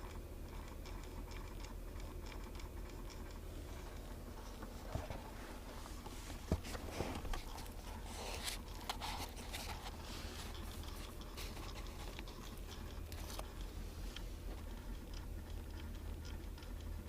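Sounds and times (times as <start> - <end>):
steady low hum: 0.0 - 17.0
clicking and ticking behind dashboard: 8.6 - 17.0.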